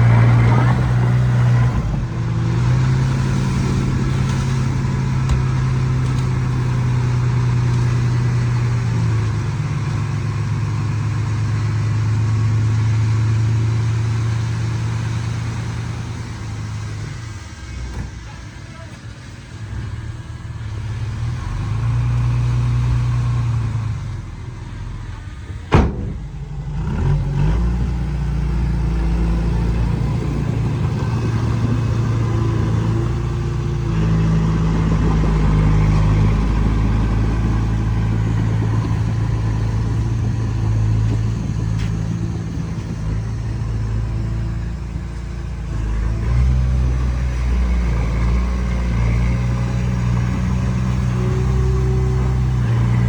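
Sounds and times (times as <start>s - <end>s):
bulldozer diesel engine working: 0.0s - 53.0s
sharp bang: 25.7s - 26.8s.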